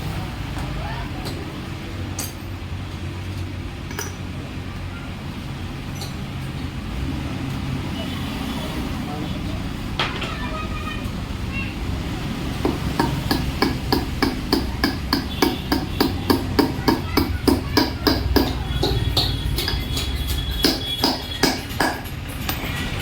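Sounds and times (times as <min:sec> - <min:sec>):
hammer striking: 0:12.6 - 0:23.0.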